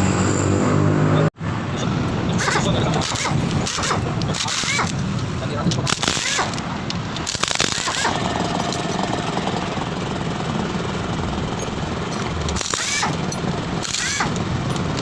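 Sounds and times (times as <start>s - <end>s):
rough motorcycle engine running: 5.9s - 15.0s.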